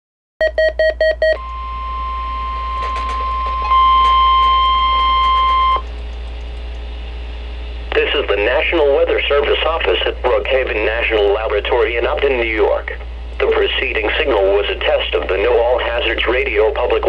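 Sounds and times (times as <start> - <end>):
quick beeps: 0.4 - 1.7
steady warning alarm tone: 0.4 - 9.8
low hum: 0.5 - 17.0
radio hiss: 7.6 - 17.0.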